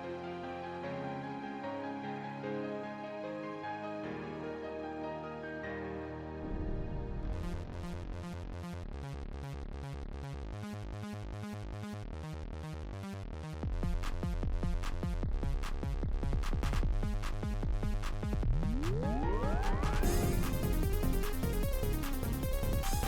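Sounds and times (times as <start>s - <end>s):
electronic music with beat: 13.5s - 23.0s.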